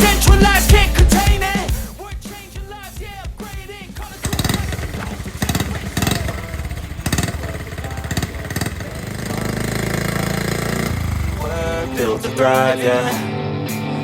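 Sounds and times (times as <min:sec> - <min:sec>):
small motorcycle engine revving and idling: 0:04.0 - 0:12.8.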